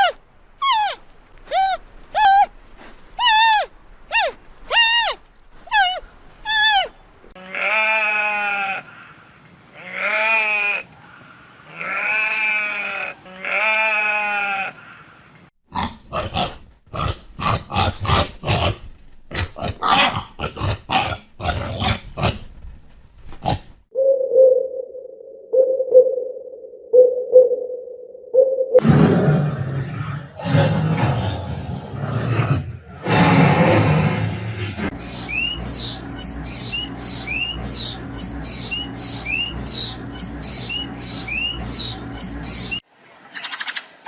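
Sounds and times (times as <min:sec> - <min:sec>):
livestock bleating: 0:07.4 - 0:09.0, 0:09.7 - 0:10.9, 0:11.7 - 0:15.0
short rough grunting calls: 0:34.9 - 0:42.8.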